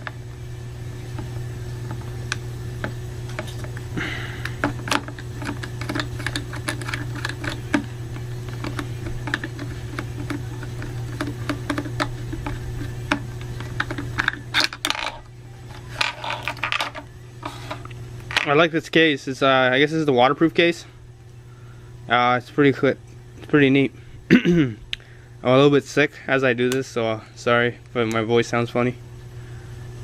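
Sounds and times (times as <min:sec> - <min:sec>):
low hum: 0:00.0 - 0:30.0
plastic parts clicking: 0:04.5 - 0:07.9.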